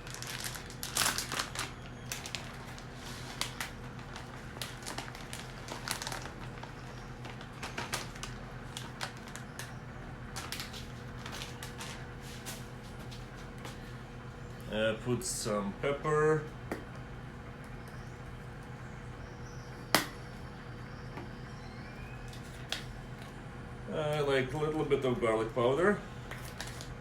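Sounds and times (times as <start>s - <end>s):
ingredients crinkling and tapping: 0.0s - 13.9s, 26.3s - 27.0s
microwave oven humming: 0.0s - 27.0s.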